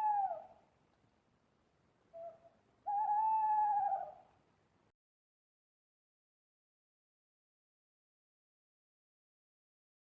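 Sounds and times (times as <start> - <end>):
owl hooting: 0.0 - 0.6, 2.1 - 4.3.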